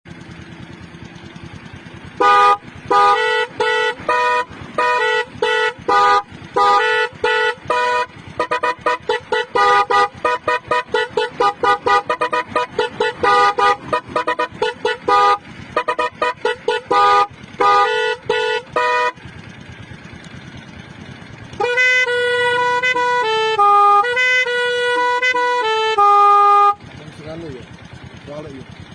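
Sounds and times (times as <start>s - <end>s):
multi-tone musical horn: 2.2s - 19.3s, 21.4s - 26.9s.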